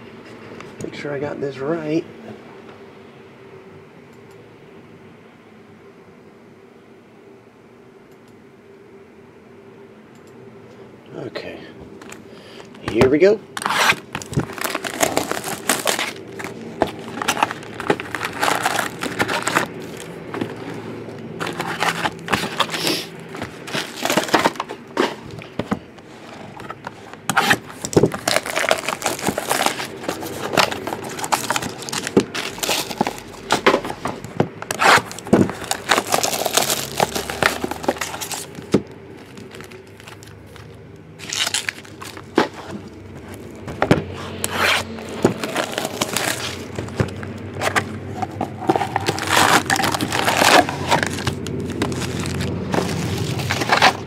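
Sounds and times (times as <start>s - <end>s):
plastic and cardboard packaging tearing: 12.8s - 54.0s.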